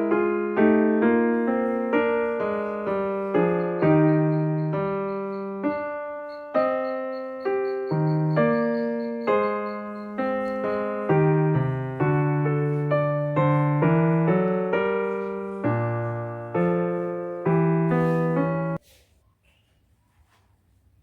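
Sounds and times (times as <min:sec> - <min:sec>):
slow piano chords: 0:00.0 - 0:18.8.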